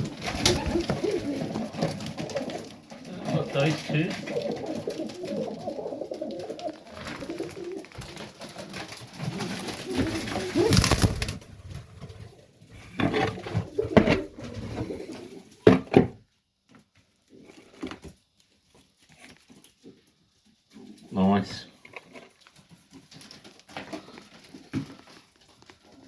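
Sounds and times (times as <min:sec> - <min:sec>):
wings fluttering: 0:00.0 - 0:12.4
pigeons cooing: 0:00.0 - 0:15.7.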